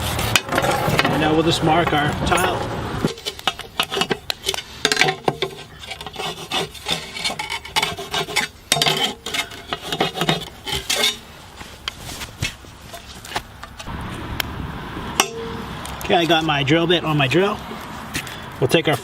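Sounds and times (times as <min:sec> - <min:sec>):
scratching on porcelain tile: 0:03.1 - 0:11.2.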